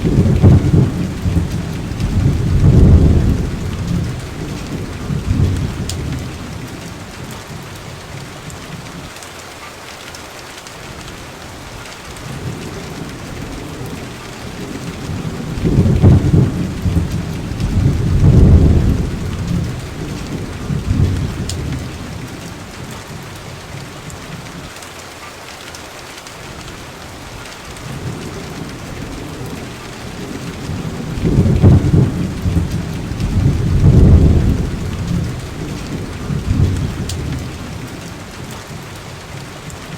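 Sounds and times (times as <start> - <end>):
rolling thunder: 0.0 - 7.4, 12.2 - 23.0, 27.8 - 38.8
steady rain: 0.0 - 39.9.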